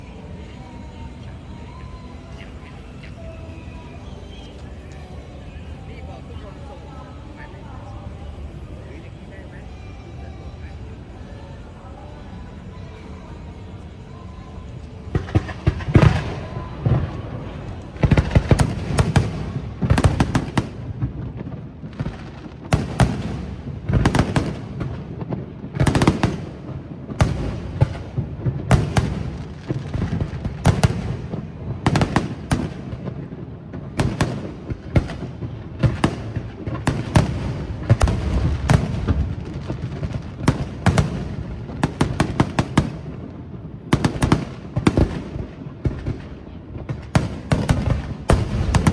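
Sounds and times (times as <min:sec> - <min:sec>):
fireworks bursting and crackling: 0:13.4 - 0:48.9
echoing booms: 0:15.1 - 0:46.2, 0:46.8 - 0:48.9.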